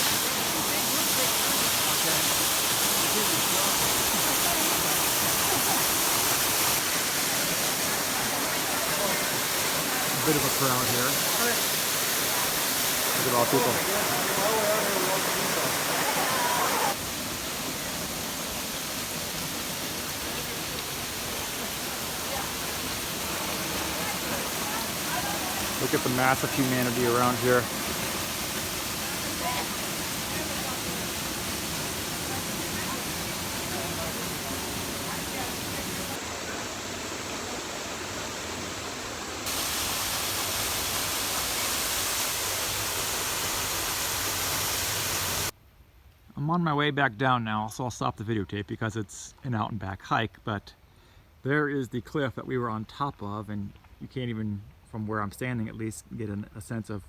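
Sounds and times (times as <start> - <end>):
waterfall rushing: 0.0 - 45.6.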